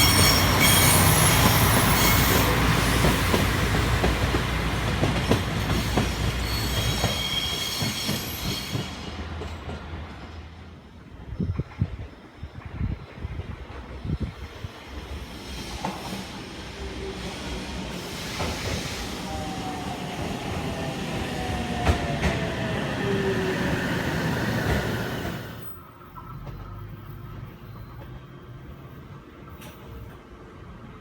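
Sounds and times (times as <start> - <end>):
train whine: 0.0 - 31.0.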